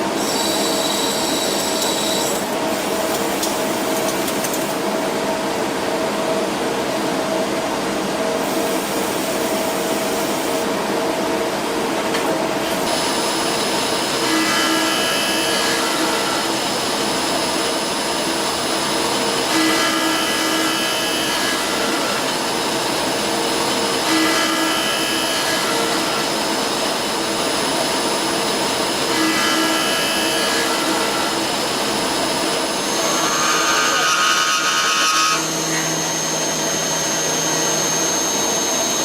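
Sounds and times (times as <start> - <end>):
lathe machining noise: 0.0 - 5.1, 12.6 - 39.0
high machine whine: 0.0 - 11.6, 12.5 - 39.0.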